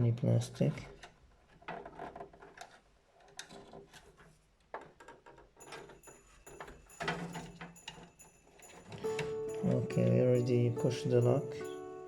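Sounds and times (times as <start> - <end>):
plastic clicks and scrapes: 0.9 - 5.6.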